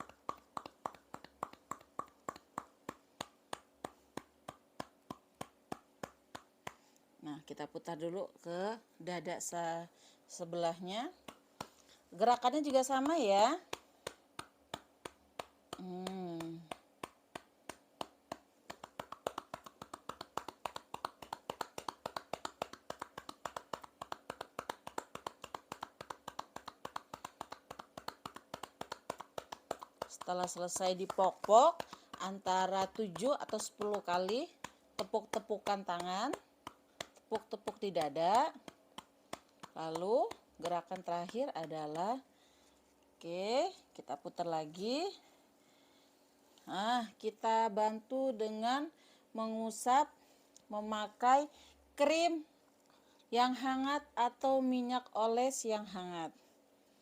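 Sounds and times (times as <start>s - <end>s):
hollow hand pats on back: 0.0s - 7.0s, 11.1s - 42.2s.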